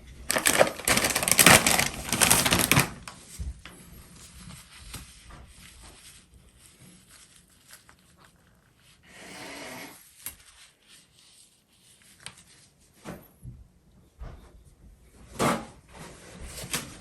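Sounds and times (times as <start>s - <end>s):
material rustling and rubbing: 0.0s - 9.1s, 9.9s - 13.0s.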